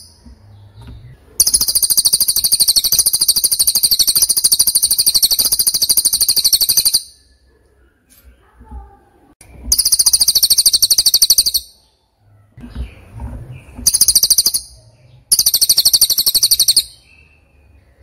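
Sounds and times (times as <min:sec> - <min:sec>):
bird trilling: 0:01.4 - 0:07.4, 0:09.7 - 0:11.9, 0:13.8 - 0:17.4.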